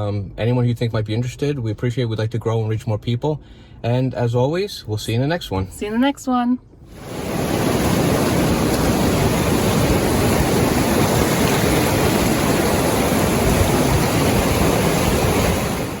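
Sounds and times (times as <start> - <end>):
river rapids rushing: 7.0 - 16.0.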